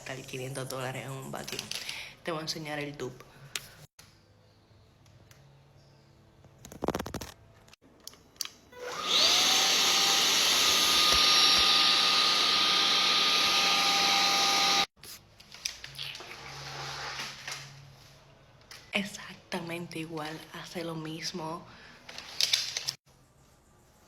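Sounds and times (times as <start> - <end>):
vacuum cleaner motor whine: 8.8 - 14.9.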